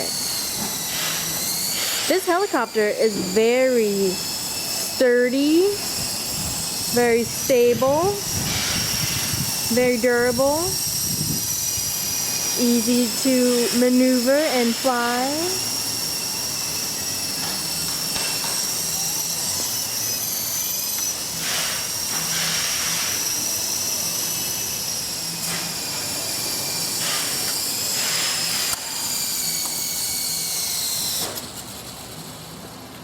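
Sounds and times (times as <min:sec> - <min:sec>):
rc helicopter whine: 0:00.0 - 0:33.0.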